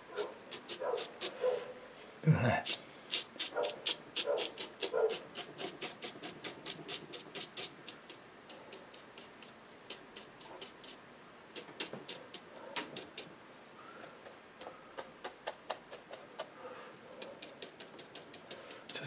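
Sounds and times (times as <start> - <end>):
stiff brush tapping paper: 2.7 - 11.0, 11.6 - 13.3, 14.0 - 16.5, 17.2 - 19.0.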